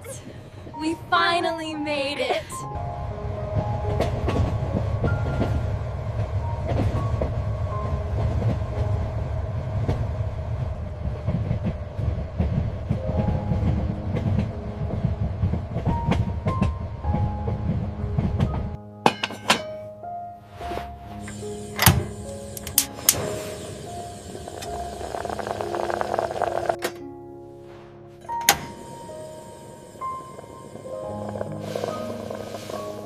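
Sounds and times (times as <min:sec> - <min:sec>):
train rumbling: 0:00.0 - 0:18.9, 0:20.6 - 0:33.0
wheels rattling on track: 0:03.1 - 0:18.8, 0:21.2 - 0:27.0, 0:28.3 - 0:33.0.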